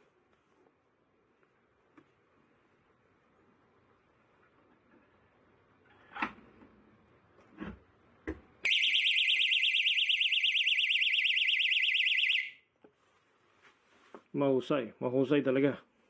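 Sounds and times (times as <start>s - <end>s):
door stop alarm shrieking: 8.7s - 12.6s.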